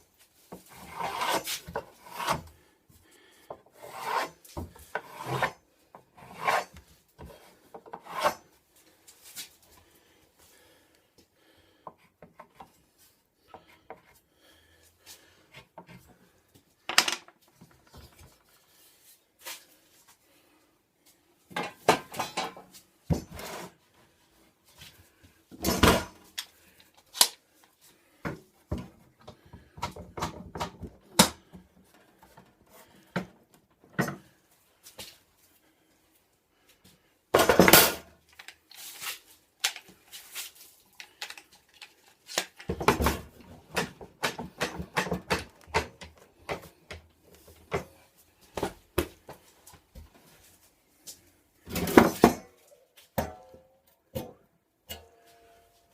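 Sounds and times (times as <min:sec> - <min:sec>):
tools and wood knocking on workbench: 0:21.5 - 0:23.6, 0:28.2 - 0:31.4, 0:33.2 - 0:34.3, 0:37.4 - 0:38.1, 0:42.7 - 0:47.1.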